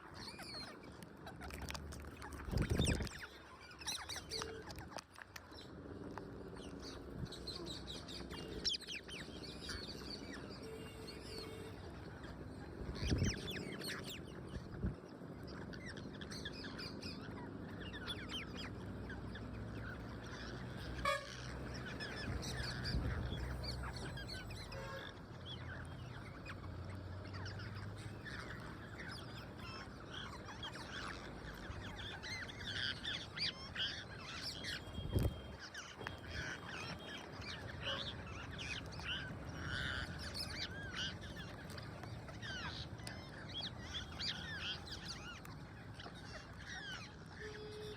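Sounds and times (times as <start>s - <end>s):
parrots squawking: 15.5s - 47.9s.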